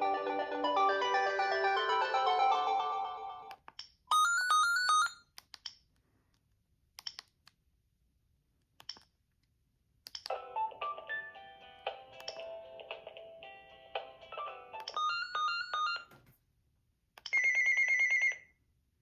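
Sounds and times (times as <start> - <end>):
polyphonic ringtone melody: 0.0 - 3.5, 10.3 - 16.1
isolated clicks: 10.0 - 10.3.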